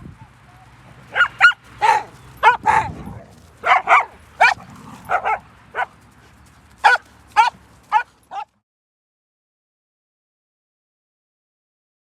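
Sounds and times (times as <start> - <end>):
dog yipping: 1.1 - 5.9, 6.8 - 8.5.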